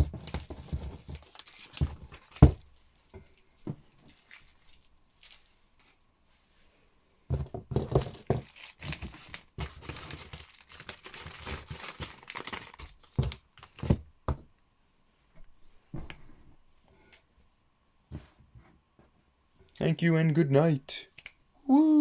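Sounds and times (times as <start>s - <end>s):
packaging crinkling: 0.2s - 3.1s, 4.1s - 5.4s, 8.0s - 13.9s.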